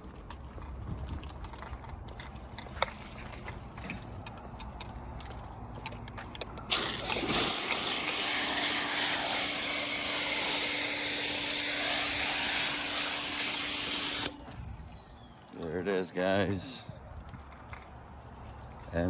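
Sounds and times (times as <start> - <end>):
pressure washer spray hiss: 6.7 - 14.4
motor hum: 6.7 - 15.5.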